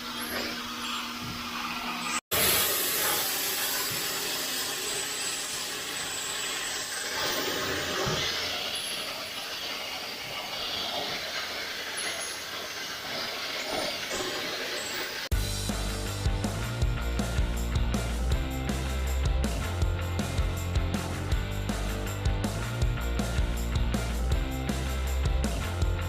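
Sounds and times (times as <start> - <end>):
pressure washer spray hiss: 2.3 - 15.3.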